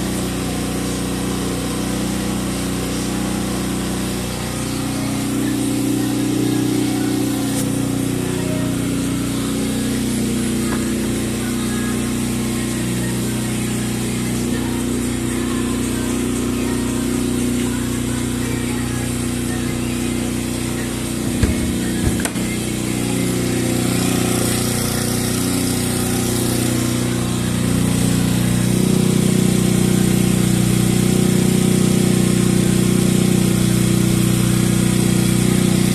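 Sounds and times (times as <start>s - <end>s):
generator running: 0.0s - 35.9s
knocks: 21.4s - 22.4s.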